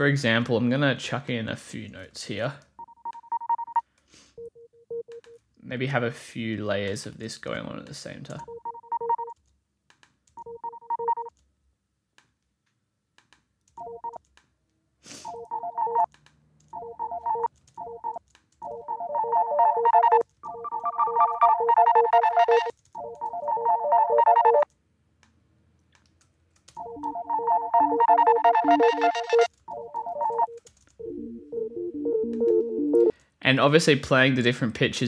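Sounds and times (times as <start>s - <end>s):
pitched sampler notes pulsing: 18.7s - 24.6s, 26.8s - 33.1s.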